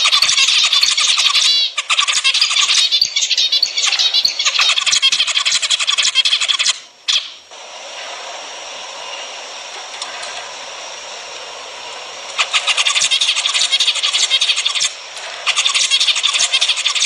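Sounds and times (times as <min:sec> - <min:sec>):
finches singing and calling: 0:00.0 - 0:07.4, 0:12.3 - 0:17.0.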